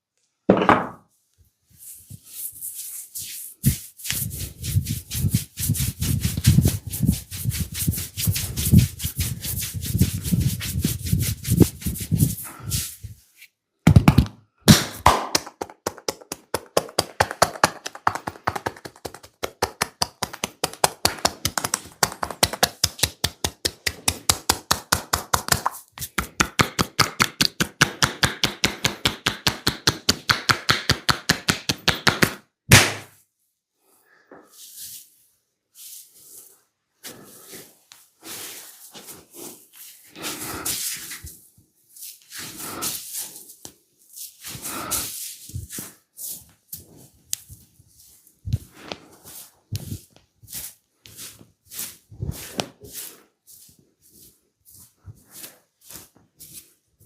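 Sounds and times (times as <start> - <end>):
hands tapping and chopping on skin: 13.9 - 33.1.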